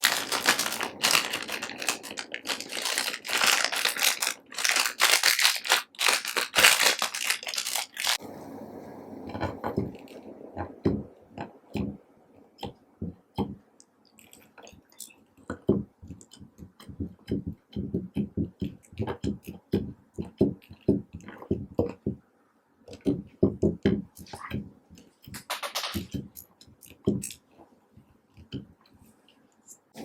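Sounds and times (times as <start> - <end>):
slime squelching: 0.0 - 8.2.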